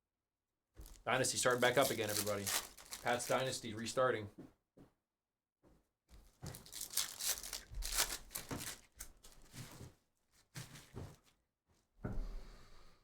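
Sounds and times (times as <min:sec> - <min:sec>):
foil wrappers tearing and crinkling: 0:00.8 - 0:03.6, 0:06.4 - 0:09.6.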